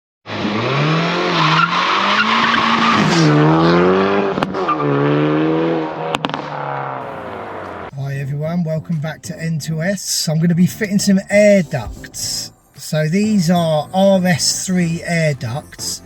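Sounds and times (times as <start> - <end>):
car engine revving: 0.3 - 8.0.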